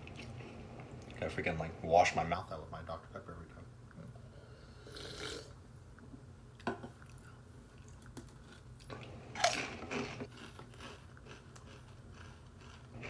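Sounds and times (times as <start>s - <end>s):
chewing crunchy crisps: 7.1s - 13.0s.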